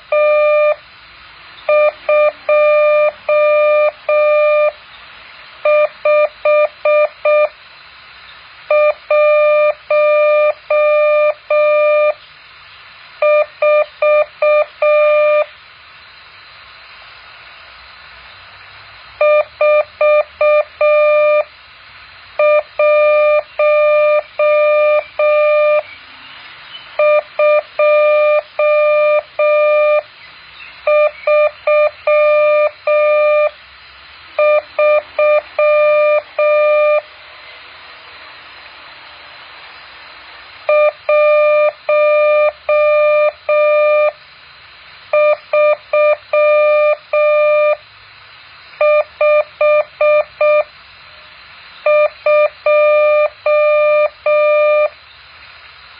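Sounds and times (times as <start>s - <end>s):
morse code beeps: 0.0s - 0.8s, 1.7s - 4.8s, 5.6s - 7.6s, 8.7s - 12.2s, 13.2s - 15.5s, 19.2s - 21.5s, 22.4s - 25.9s, 27.0s - 30.1s, 30.8s - 33.6s, 34.4s - 37.1s, 40.7s - 44.2s, 45.1s - 47.8s, 48.8s - 50.7s, 51.8s - 55.0s
faint hiss: 0.0s - 55.9s.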